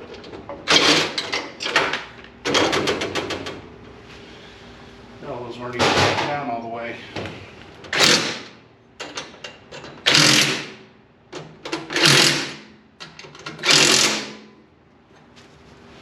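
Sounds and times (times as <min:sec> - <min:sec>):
power driver running: 0:07.9 - 0:08.6, 0:10.0 - 0:10.8, 0:11.7 - 0:12.8, 0:13.5 - 0:14.5.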